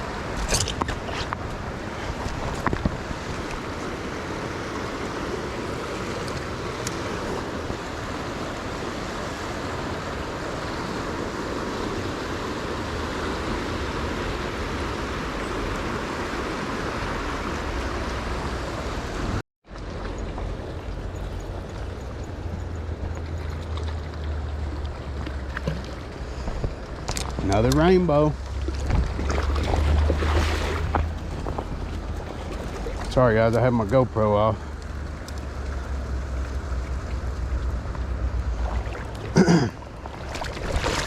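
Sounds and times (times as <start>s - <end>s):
river flowing: 0.0s - 41.0s.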